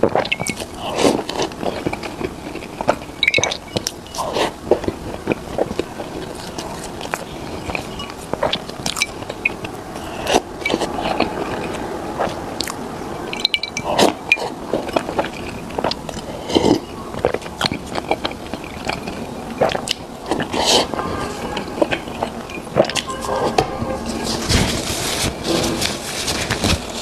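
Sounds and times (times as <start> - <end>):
eating and wet chewing: 0.0 - 27.0.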